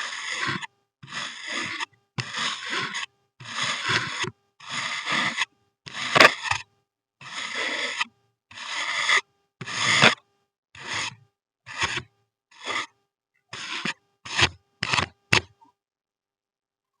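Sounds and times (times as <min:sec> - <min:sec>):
blade scraping through sand: 0:00.0 - 0:06.6, 0:07.2 - 0:10.2, 0:10.8 - 0:11.1, 0:11.7 - 0:12.0, 0:12.6 - 0:12.9, 0:13.5 - 0:15.1.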